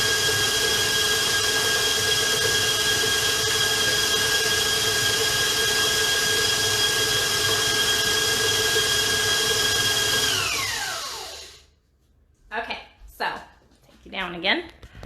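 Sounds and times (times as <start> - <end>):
stand mixer whining: 0.0 - 11.7.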